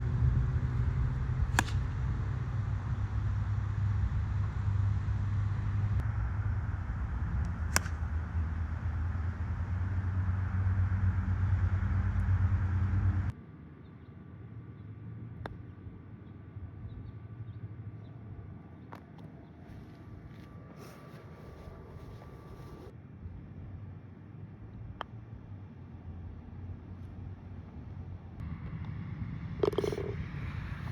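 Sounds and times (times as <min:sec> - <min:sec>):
steady low rumble: 0:00.0 - 0:13.4, 0:14.8 - 0:30.9
golf club striking ball: 0:01.4 - 0:02.2, 0:07.7 - 0:08.1, 0:29.6 - 0:30.2.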